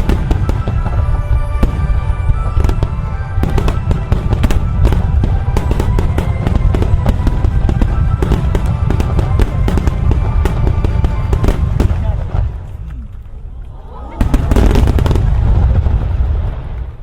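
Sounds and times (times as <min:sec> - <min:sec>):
fireworks booming and crackling: 0:00.0 - 0:12.9, 0:14.2 - 0:17.0
music playing: 0:00.0 - 0:13.1.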